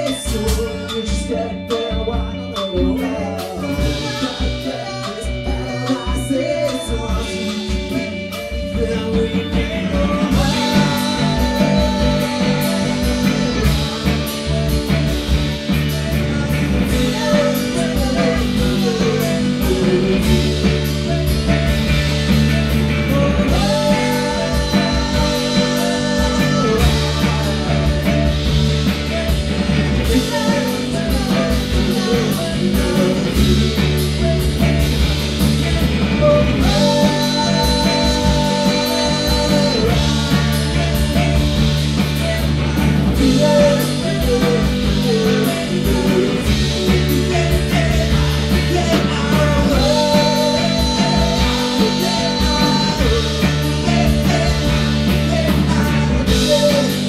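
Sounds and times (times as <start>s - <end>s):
bass guitar: 0.0s - 57.0s
drums: 0.0s - 57.0s
electric guitar: 0.0s - 57.0s
person singing: 0.0s - 57.0s.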